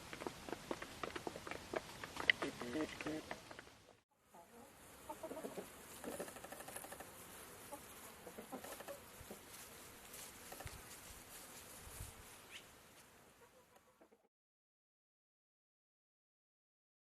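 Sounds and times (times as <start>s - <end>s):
faint outdoor hiss: 0.0s - 14.3s.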